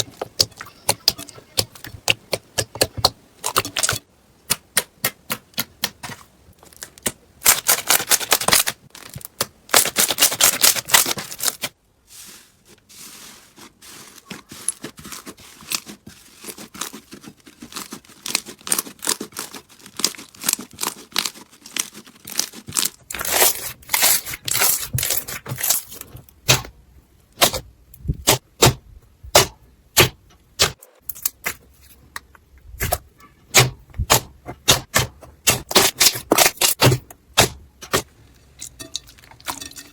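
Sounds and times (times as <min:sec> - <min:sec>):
slime crackling and popping: 0:14.2 - 0:25.9.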